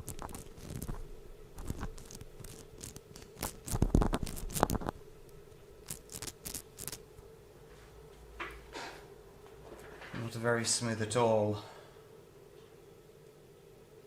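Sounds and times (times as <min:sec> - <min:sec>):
scratchy crunching grind: 0:00.0 - 0:05.0, 0:05.9 - 0:07.0.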